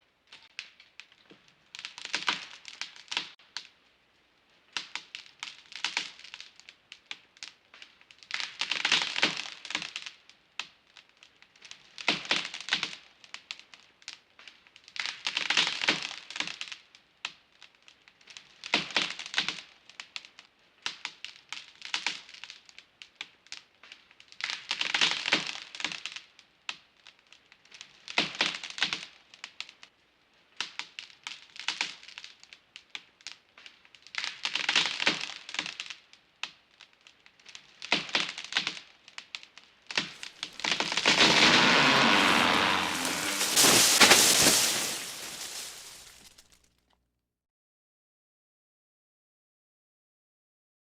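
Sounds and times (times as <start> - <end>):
wood cracking and splintering: 40.0 - 46.4.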